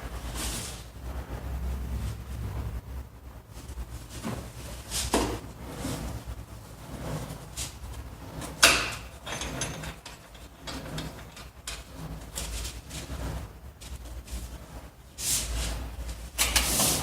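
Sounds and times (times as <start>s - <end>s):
scraping and rubbing of pipe fittings: 3.6s - 17.0s.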